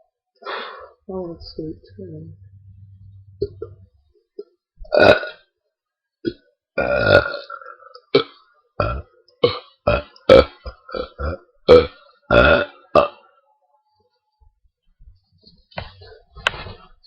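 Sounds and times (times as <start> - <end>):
person burping: 3.4 - 5.5, 6.2 - 13.2.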